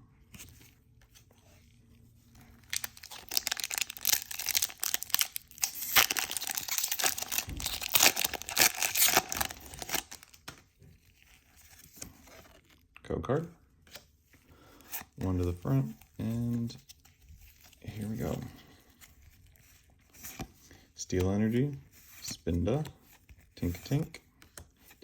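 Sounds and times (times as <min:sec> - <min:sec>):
foil wrapper tearing and crinkling: 0:02.6 - 0:10.5.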